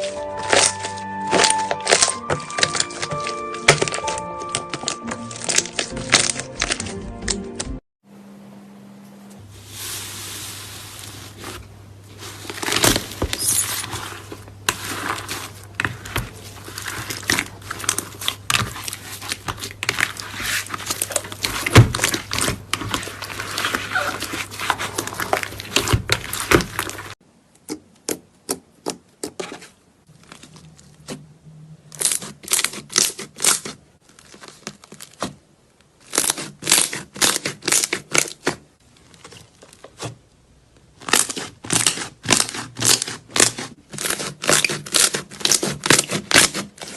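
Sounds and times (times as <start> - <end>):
slime crackling and popping: 0.0 - 6.9, 32.0 - 35.3, 36.0 - 38.6, 41.0 - 46.9.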